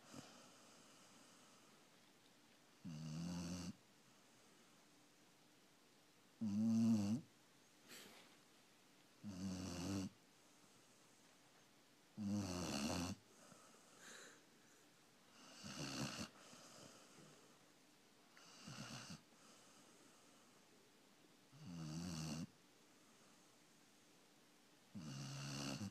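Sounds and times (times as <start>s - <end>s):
faint breaths: 0.0s - 2.4s, 7.7s - 8.7s, 10.3s - 11.8s, 12.8s - 21.0s, 22.8s - 24.2s
puppy snoring: 2.8s - 3.8s, 6.4s - 7.3s, 9.2s - 10.2s, 12.2s - 14.4s, 15.3s - 17.4s, 18.3s - 19.8s, 21.5s - 22.5s, 24.9s - 25.9s.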